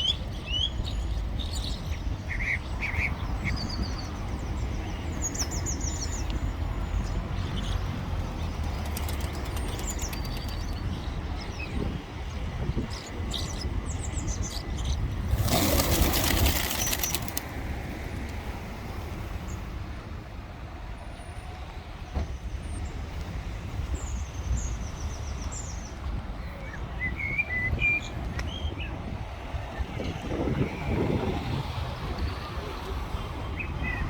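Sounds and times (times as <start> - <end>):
small birds chirping: 0.0 - 17.4
pigeon wings flapping: 8.7 - 10.5, 15.3 - 17.5.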